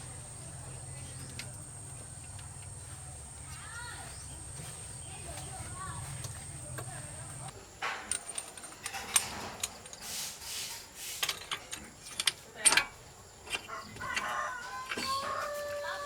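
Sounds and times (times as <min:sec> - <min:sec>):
metallic clicks and clinks: 0:06.0 - 0:10.1, 0:11.2 - 0:15.3.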